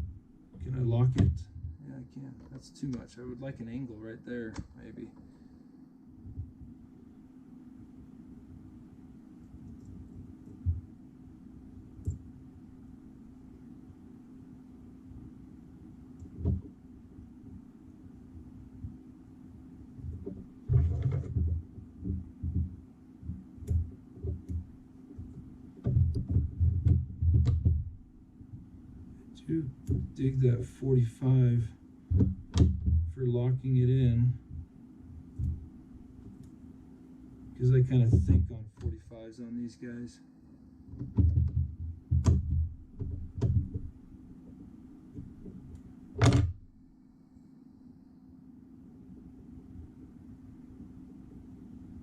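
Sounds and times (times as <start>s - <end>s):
dull knocks and thumps: 0.0s - 1.8s, 10.4s - 10.9s, 16.2s - 16.8s, 20.0s - 28.7s, 29.8s - 30.8s, 32.1s - 33.3s, 34.2s - 36.4s, 37.8s - 39.1s, 40.9s - 46.8s
steady low hum: 0.0s - 52.0s.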